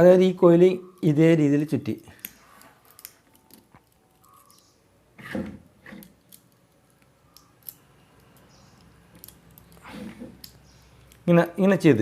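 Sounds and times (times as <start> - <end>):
wire rustling: 1.8 - 11.4.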